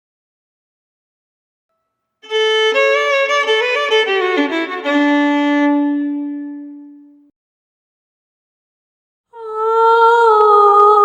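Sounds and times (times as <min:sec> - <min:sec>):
solo violin: 0:02.2 - 0:07.3.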